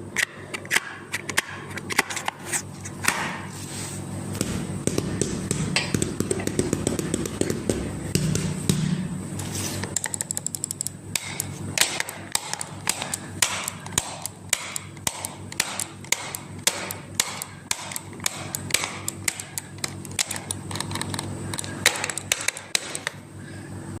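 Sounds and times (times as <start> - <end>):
steady low hum: 0.0 - 24.0
taps and clicks on hard object: 4.9 - 9.0, 9.9 - 23.2.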